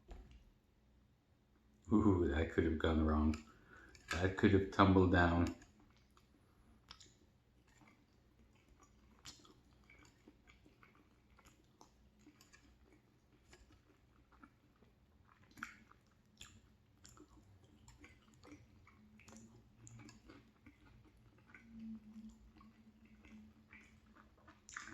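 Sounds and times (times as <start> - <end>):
faint close-up chewing: 1.6 - 24.9
small mouth clicks: 5.4 - 14.6, 15.3 - 24.9.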